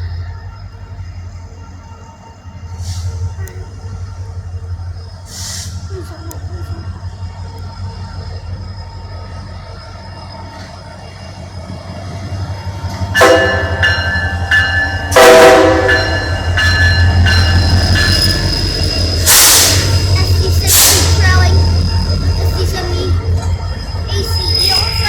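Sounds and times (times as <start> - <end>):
diesel engine drone: 0.0 - 25.0
locomotive horn blasts: 13.2 - 14.0, 15.0 - 16.3.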